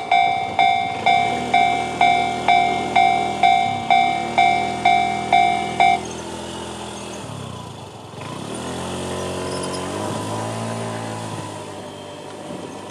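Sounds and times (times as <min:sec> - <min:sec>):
level crossing alarm dinging: 0:00.0 - 0:06.4
road vehicle engines running: 0:00.0 - 0:12.9.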